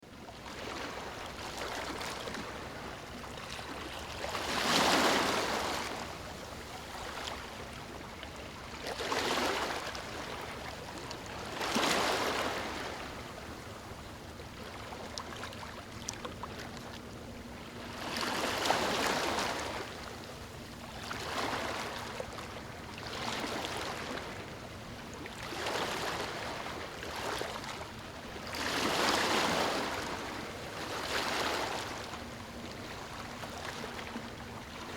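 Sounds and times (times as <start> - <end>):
ocean waves breaking: 0.5 - 7.8, 8.8 - 10.7, 17.7 - 20.2, 20.9 - 24.6, 25.4 - 34.9.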